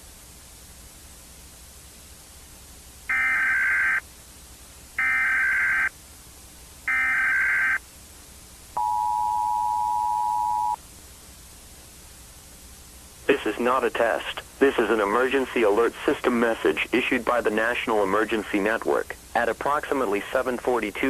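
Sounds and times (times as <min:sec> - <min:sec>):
two-tone attention signal: 0:08.8 - 0:10.8.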